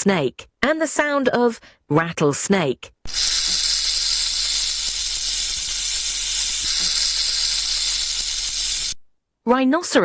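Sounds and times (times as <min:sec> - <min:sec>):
rattlesnake rattling: 0:03.1 - 0:09.0.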